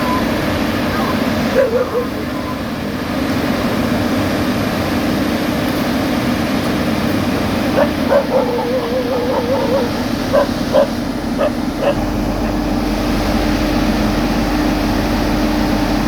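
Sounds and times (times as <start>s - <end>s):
heavy machine engine running: 0.0s - 16.0s
dog barking and whining: 0.9s - 2.7s, 7.8s - 12.0s.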